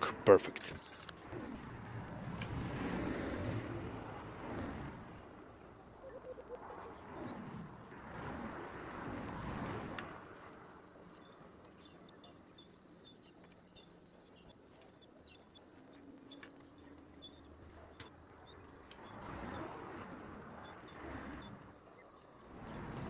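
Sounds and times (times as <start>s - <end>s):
small birds chirping: 4.8s - 23.0s.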